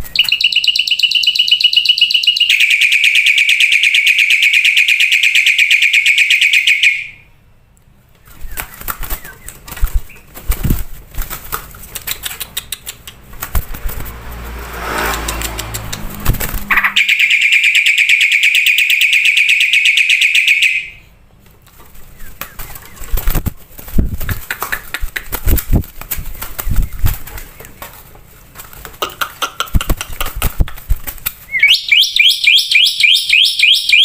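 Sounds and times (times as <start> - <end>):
fast pulsing bird trill: 0.0 - 7.0, 16.6 - 20.8
bird clicks and chirps: 11.9 - 13.7, 15.1 - 17.0, 24.2 - 25.6.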